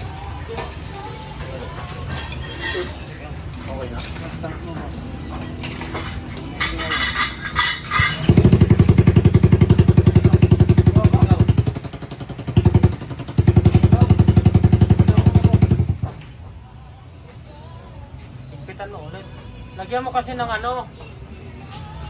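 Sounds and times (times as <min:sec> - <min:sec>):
light metal clinks: 0:00.0 - 0:16.4
motorcycle engine revving loud: 0:07.8 - 0:16.2.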